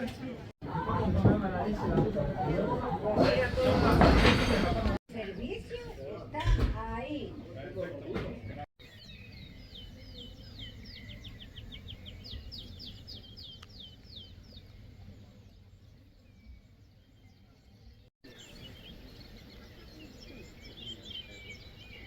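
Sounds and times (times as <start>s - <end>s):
songbird singing: 5.1s - 22.0s.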